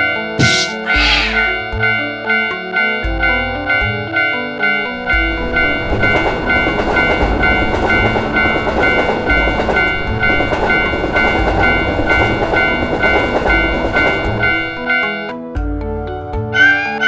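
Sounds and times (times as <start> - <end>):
railroad crossing bell: 1.9 - 15.2
train rumble and wheel clatter: 4.9 - 14.8.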